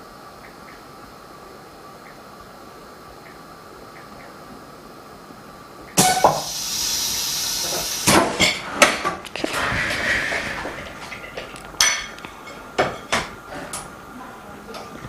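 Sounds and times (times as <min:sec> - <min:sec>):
air hissing from machine: 0:06.0 - 0:14.1.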